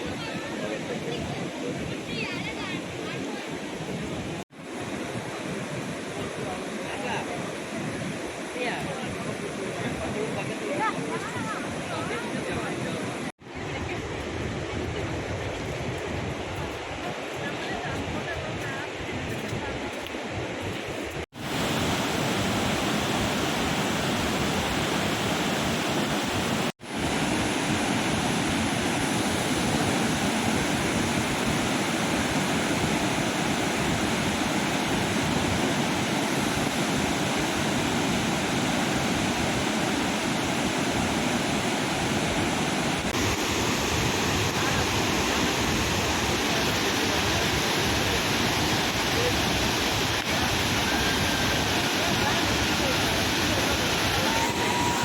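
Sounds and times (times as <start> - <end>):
waterfall rushing: 21.3 - 55.0.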